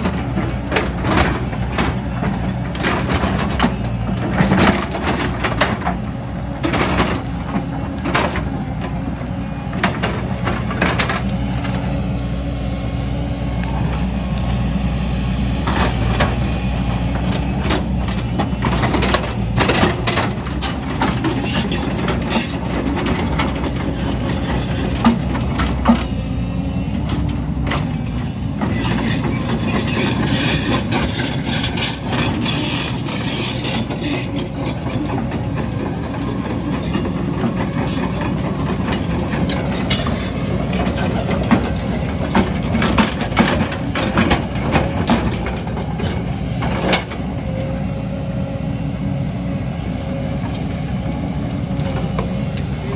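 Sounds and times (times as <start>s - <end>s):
excavator diesel engine running: 0.0s - 52.9s
sharp clanks and knocks: 28.6s - 47.3s.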